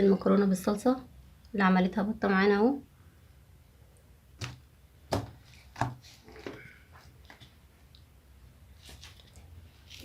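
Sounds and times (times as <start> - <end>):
sharp knocks of objects set down: 4.4 - 6.7.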